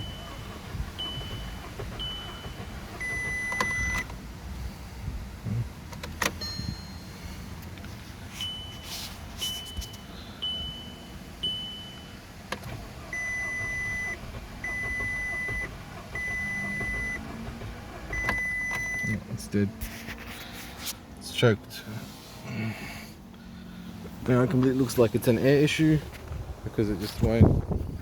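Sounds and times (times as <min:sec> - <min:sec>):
car warning chimes: 0:00.0 - 0:04.2, 0:06.0 - 0:19.7
longer lower beeps: 0:01.0 - 0:04.1, 0:08.4 - 0:12.2, 0:18.1 - 0:19.2
short high beeps: 0:08.4 - 0:12.1.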